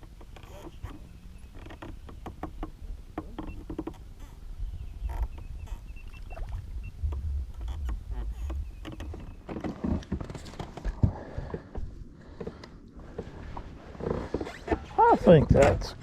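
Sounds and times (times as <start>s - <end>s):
steady low rumble: 6.5s - 8.8s.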